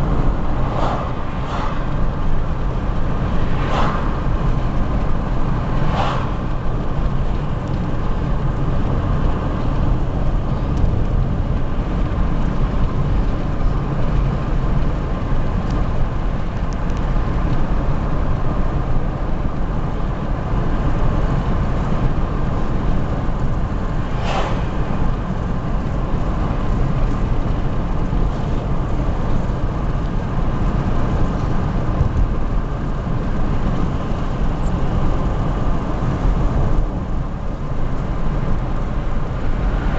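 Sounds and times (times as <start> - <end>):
car driving on road: 0.0 - 39.9
brief swish: 0.7 - 1.8, 3.6 - 4.1, 5.9 - 6.4, 24.1 - 24.9.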